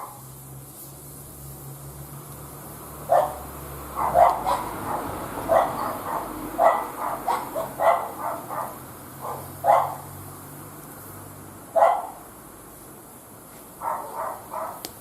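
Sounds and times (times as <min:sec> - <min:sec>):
dog barking: 0:03.1 - 0:03.4, 0:04.0 - 0:10.1, 0:11.7 - 0:12.2, 0:13.8 - 0:14.8.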